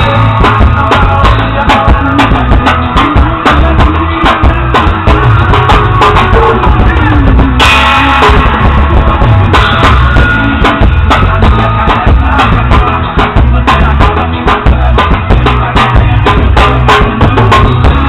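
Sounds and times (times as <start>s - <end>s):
drum kit played with skewers: 0.0s - 18.0s
recorded song: 0.0s - 18.0s
cymbal crash: 7.6s - 8.9s.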